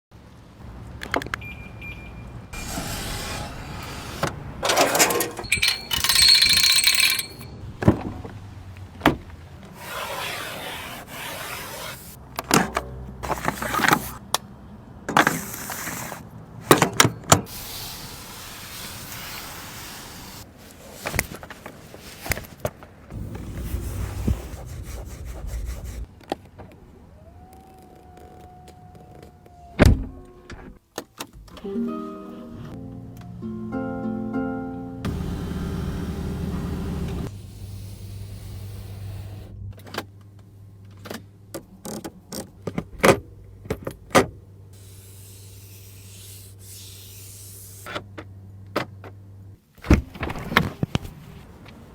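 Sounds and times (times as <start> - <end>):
rubbing and scraping noise: 2.6 - 5.4, 9.7 - 12.2, 23.1 - 26.1.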